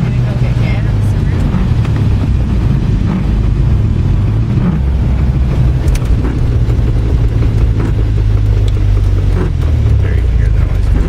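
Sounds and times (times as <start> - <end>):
engine knocking: 0.0 - 11.0
vehicle engine rumbling: 0.0 - 11.0.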